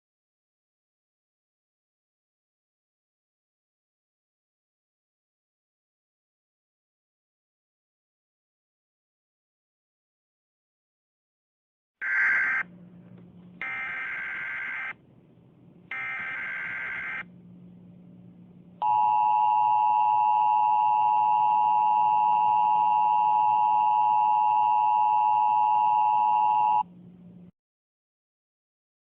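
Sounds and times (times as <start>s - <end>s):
steady attention tone: 12.0s - 27.4s
faint low hum: 12.1s - 27.5s.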